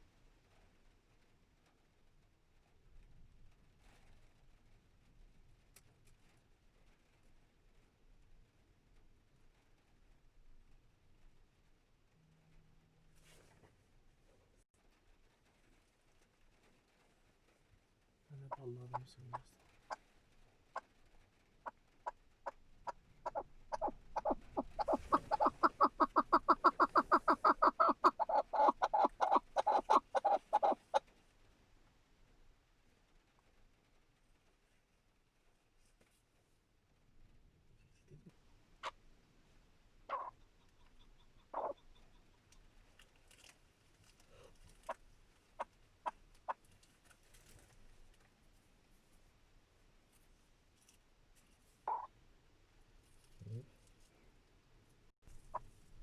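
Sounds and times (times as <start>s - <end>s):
partridge clucking call: 21.6s - 31.1s, 40.1s - 42.6s, 51.9s - 52.1s.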